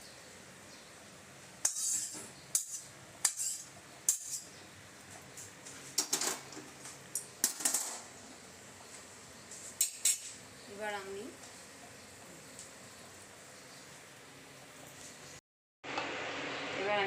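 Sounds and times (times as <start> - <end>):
metal cookware clinking: 1.6 - 4.5.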